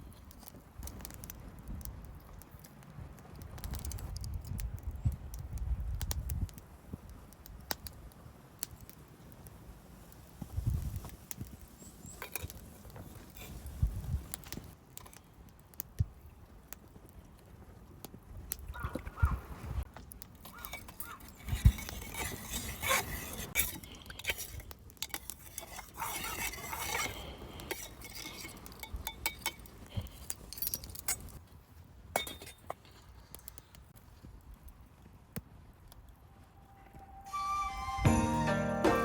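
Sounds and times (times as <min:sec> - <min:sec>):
metal cookware clinking: 0:32.2 - 0:32.7.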